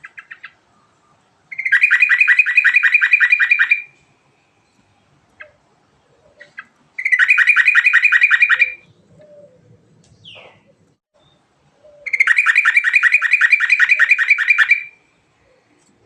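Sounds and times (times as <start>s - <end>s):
bird singing rapid trills: 0.0s - 3.9s, 6.4s - 9.1s, 10.2s - 15.1s.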